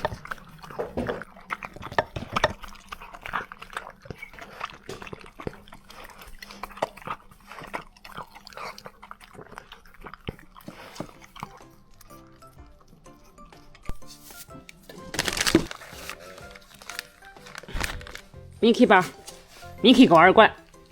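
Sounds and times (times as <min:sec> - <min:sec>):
dogs chewing: 0:00.0 - 0:20.9
dogs lapping: 0:00.0 - 0:20.9.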